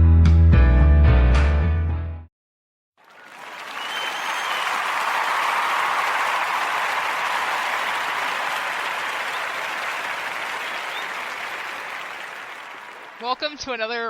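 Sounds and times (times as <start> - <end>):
crowd applause: 3.0 - 13.8.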